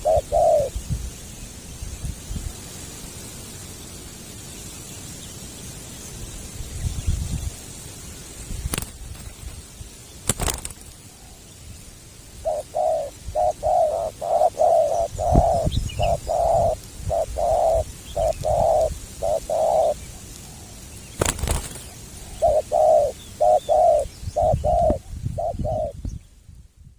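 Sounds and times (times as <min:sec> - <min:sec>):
dove cooing: 0:00.0 - 0:00.8, 0:12.4 - 0:20.8, 0:22.2 - 0:26.0.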